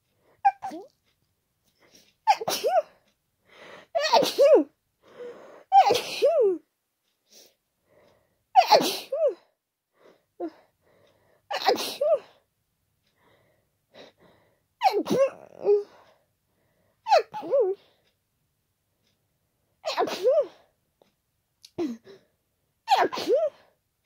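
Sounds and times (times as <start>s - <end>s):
short quick breaths: 3.4s - 4.0s, 7.2s - 8.5s, 13.1s - 14.7s
person sneezing: 22.9s - 23.6s.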